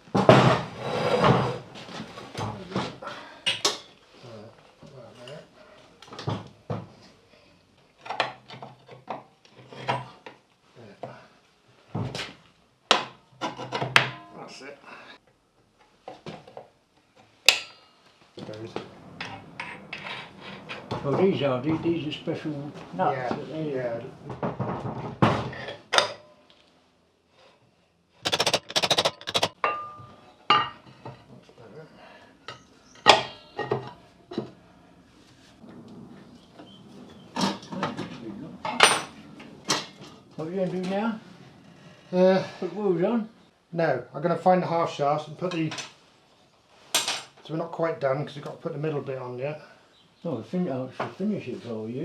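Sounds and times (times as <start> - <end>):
metal parts clinking and rattling: 28.3 - 29.6
rattling run of ticks: 28.3 - 29.6.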